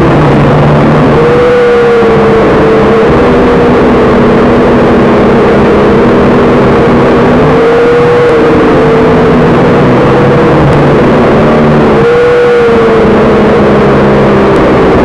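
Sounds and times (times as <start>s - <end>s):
drone propellers whining: 0.0s - 15.0s
loud rushing noise: 0.0s - 15.0s.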